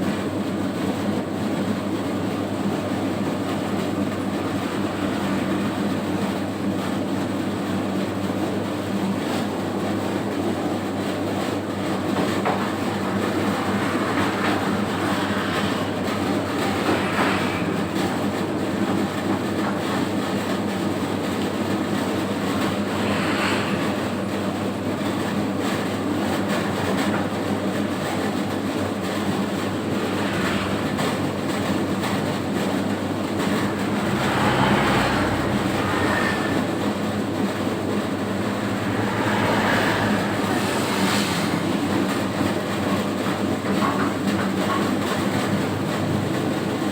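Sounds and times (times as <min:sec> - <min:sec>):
mechanical rumble: 0:28.2 - 0:42.9.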